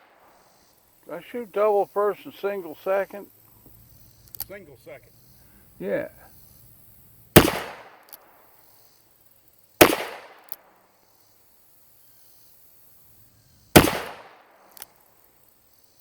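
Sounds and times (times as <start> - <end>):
faint sharp tick: 3.5 - 4.6
revolver shots: 7.4 - 8.0, 9.8 - 10.4, 13.8 - 14.3.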